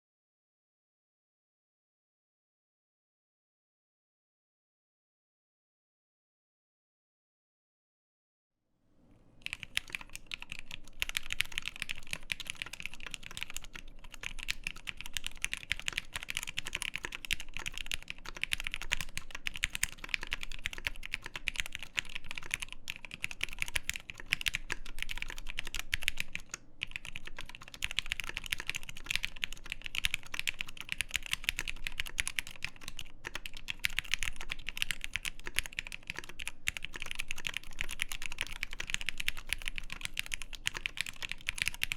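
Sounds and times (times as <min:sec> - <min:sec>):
mechanical keyboard typing: 0:09.4 - 0:41.9.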